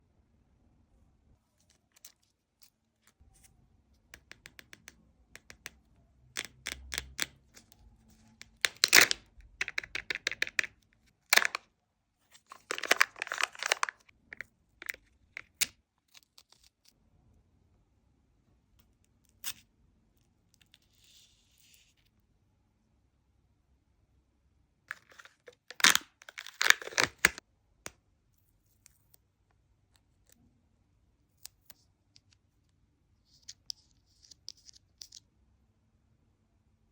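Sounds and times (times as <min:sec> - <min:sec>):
foil wrapper crinkling: 0:12.5 - 0:14.0, 0:25.2 - 0:27.4.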